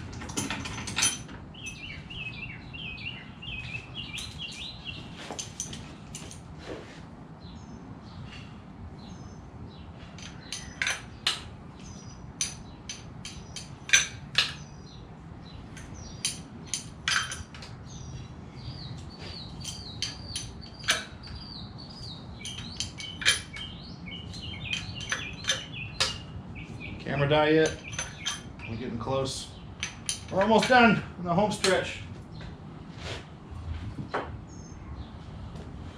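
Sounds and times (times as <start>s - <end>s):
birds chirping: 0.0s - 6.4s, 7.2s - 35.6s
metallic clinks of hand tools: 19.6s - 21.4s, 22.4s - 26.3s, 27.6s - 28.7s.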